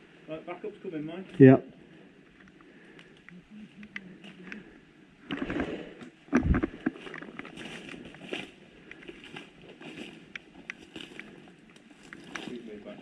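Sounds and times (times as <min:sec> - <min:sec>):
footsteps through undergrowth: 0:06.7 - 0:13.0.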